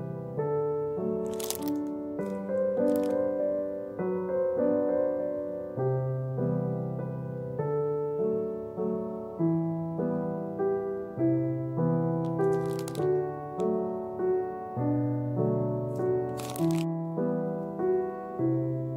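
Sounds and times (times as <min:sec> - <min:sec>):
slow piano music: 0:00.0 - 0:18.9
brief rustle: 0:01.3 - 0:03.2, 0:12.3 - 0:13.7, 0:15.9 - 0:16.9.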